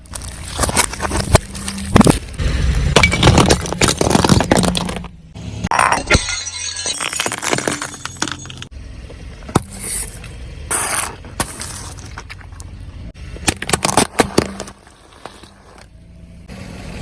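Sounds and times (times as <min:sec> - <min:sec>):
tyre crushing plastic bottles: 0:00.0 - 0:05.2, 0:06.9 - 0:08.7, 0:09.5 - 0:15.9
engine and tyre rumble: 0:00.0 - 0:06.0, 0:06.9 - 0:17.0.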